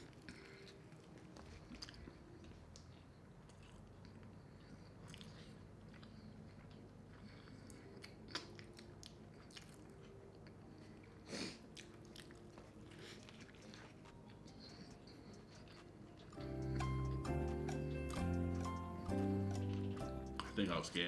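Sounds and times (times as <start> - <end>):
chewing food: 0.0 - 21.0
wet mouth sounds: 3.6 - 10.6.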